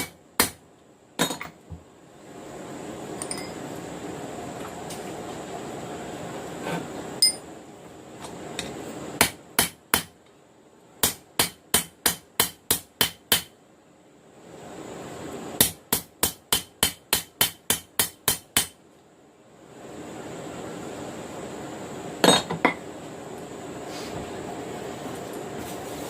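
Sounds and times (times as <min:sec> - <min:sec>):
steady hiss: 0:01.8 - 0:26.0
hammer striking steel on anvil: 0:11.0 - 0:13.5, 0:15.6 - 0:18.8.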